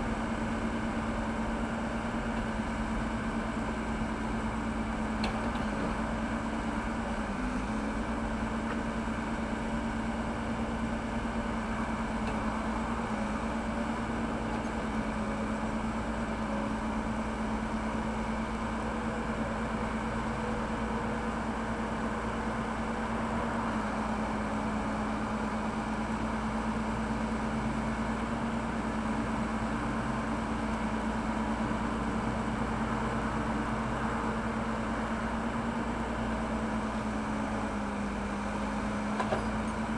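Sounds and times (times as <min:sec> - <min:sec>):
diesel engine humming steadily: 0:00.0 - 0:39.9.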